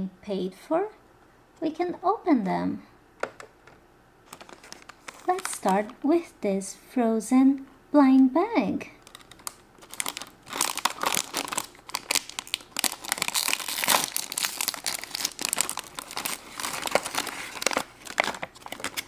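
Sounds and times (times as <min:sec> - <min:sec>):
wrapper tearing and crinkling: 0:04.3 - 0:06.0, 0:09.0 - 0:19.0.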